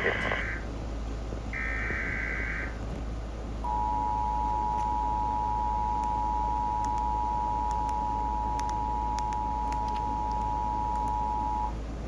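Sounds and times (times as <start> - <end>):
radio hiss and low hum: 0.0 - 0.8, 1.5 - 2.9.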